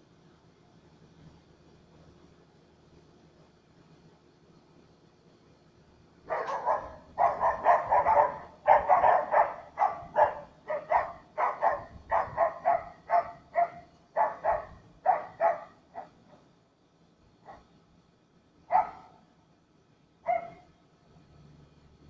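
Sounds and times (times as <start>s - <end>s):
dog barking: 6.3s - 16.4s, 17.4s - 17.7s, 18.7s - 19.2s, 20.2s - 20.7s.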